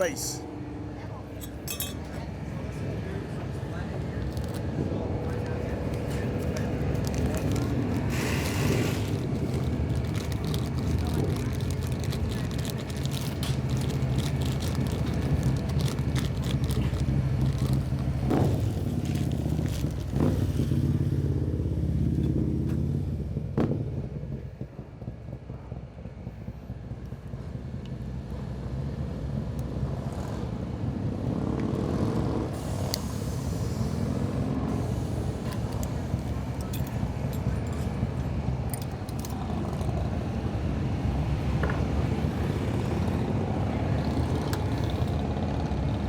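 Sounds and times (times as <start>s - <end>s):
metal parts being handled: 1.4s - 2.2s, 5.8s - 18.3s, 35.4s - 39.9s.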